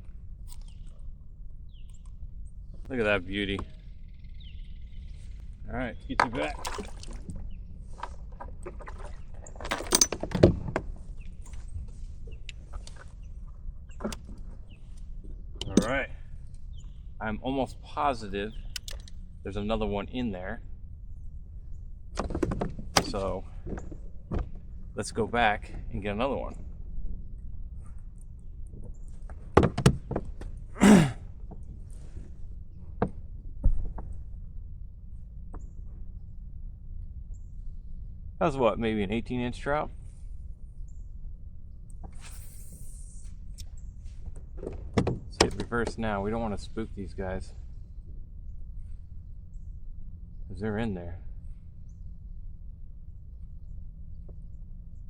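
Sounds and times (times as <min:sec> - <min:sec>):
knocks and clatter on plastic kayak: 0:06.2 - 0:11.6, 0:22.2 - 0:24.6, 0:28.8 - 0:30.6, 0:44.3 - 0:46.1
light clicks: 0:18.5 - 0:19.2.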